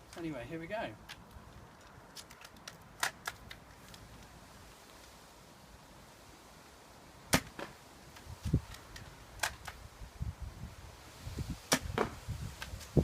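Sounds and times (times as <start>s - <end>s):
airsoft rifle shots snapping: 7.3s - 7.7s.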